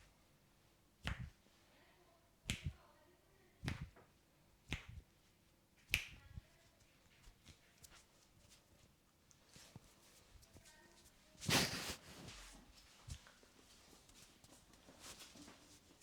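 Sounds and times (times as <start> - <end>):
hands snapping during massage: 1.0 - 1.4, 2.5 - 2.8, 3.6 - 4.0, 4.7 - 5.1, 5.8 - 6.3, 11.4 - 12.3.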